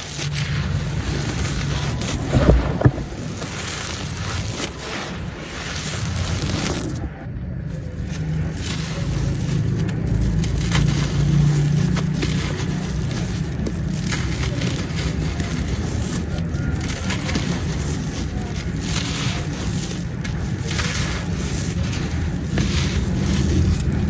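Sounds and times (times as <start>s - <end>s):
crumbly material crushed by hand: 0.0s - 24.0s
low rumble: 0.8s - 3.6s.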